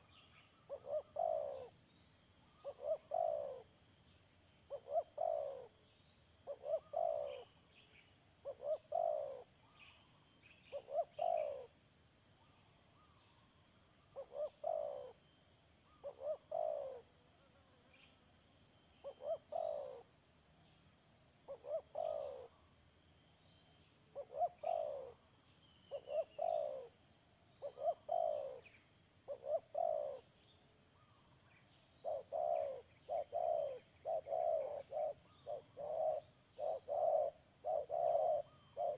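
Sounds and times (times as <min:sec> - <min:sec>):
dove cooing: 0:00.0 - 0:01.8, 0:02.6 - 0:03.7, 0:04.7 - 0:05.8, 0:06.4 - 0:07.6, 0:08.4 - 0:09.5, 0:10.7 - 0:11.8, 0:14.2 - 0:15.2, 0:16.0 - 0:17.1, 0:19.0 - 0:20.1, 0:21.5 - 0:22.6, 0:24.2 - 0:25.2, 0:25.9 - 0:27.0, 0:27.6 - 0:28.7, 0:29.3 - 0:30.3, 0:32.0 - 0:38.9
small birds chirping: 0:00.0 - 0:11.7, 0:12.3 - 0:15.2, 0:15.8 - 0:17.0, 0:18.8 - 0:38.9.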